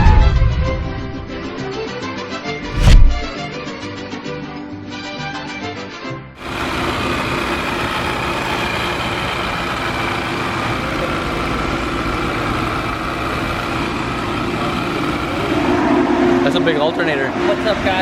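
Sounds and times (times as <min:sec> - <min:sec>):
engine idling: 0:06.4 - 0:18.0.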